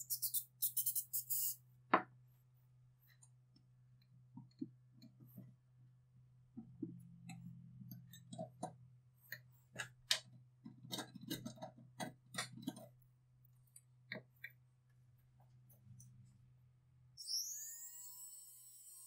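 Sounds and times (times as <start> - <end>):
clicks and taps on metal parts: 6.8 - 12.9.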